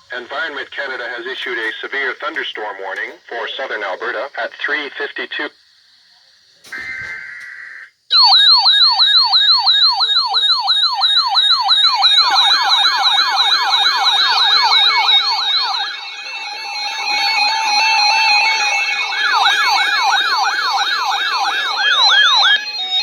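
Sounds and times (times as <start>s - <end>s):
siren-like falling sweeps: 12.3s - 23.0s.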